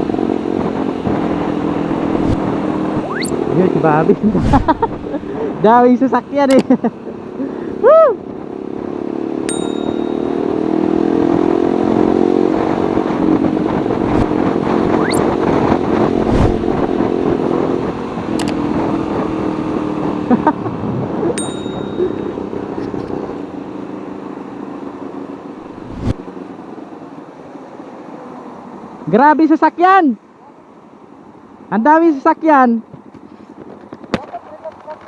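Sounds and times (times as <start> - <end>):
traffic noise: 0.0 - 35.0
short high beeps: 3.0 - 3.4, 15.0 - 15.2
motorcycle exhaust note: 8.6 - 20.3.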